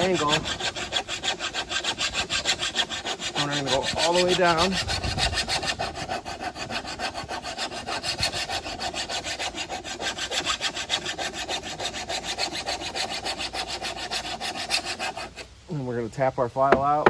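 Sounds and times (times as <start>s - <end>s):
hand file rasping on steel: 0.0s - 15.5s.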